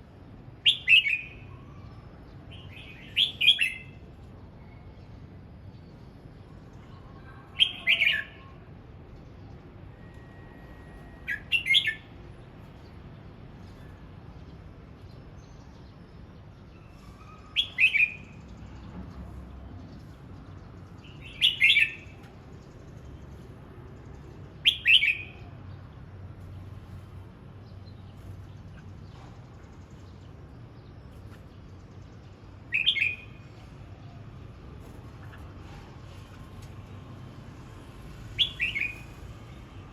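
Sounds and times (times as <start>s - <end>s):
bird singing short phrases: 7.2s - 8.6s, 38.4s - 39.2s.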